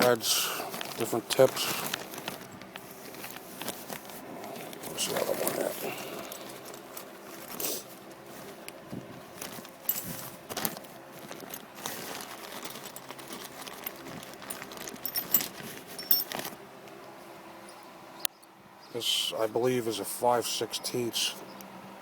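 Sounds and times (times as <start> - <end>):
steel bolts clinking: 14.5 - 16.4.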